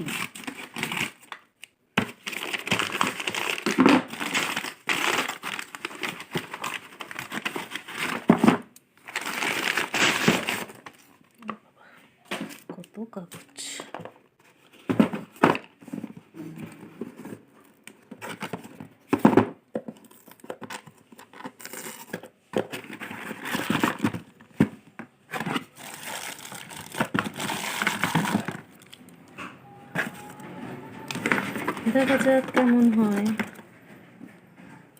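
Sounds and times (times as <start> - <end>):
paper packing crinkling: 0.0 - 11.3, 20.0 - 33.8.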